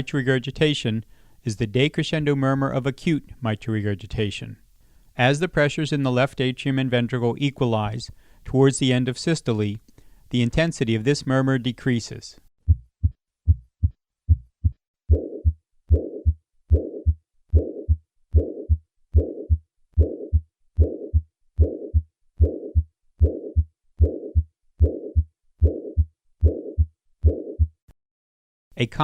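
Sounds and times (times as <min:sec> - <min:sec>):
lub-dub heartbeat: 0:12.6 - 0:27.8
whooshing heart murmur: 0:12.7 - 0:25.0.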